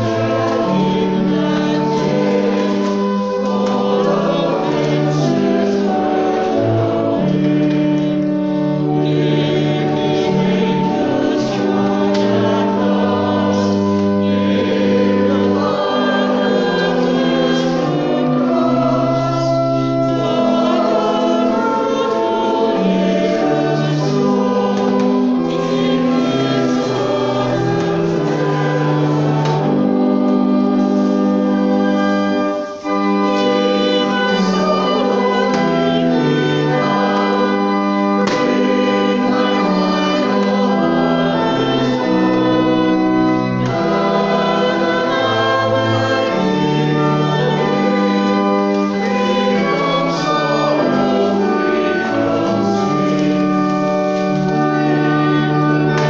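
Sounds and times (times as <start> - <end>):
organ accompaniment: 0.0 - 56.0
voices singing a hymn: 0.0 - 56.0.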